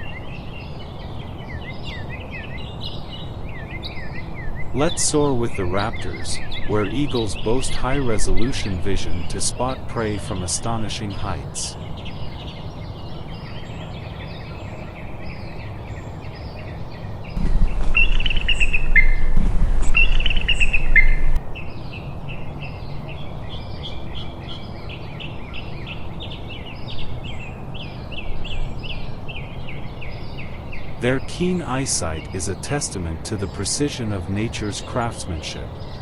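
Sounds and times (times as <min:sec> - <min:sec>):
birds chirping: 0:00.0 - 0:21.8, 0:30.1 - 0:36.0
shrill bird calls sliding down: 0:17.4 - 0:21.4.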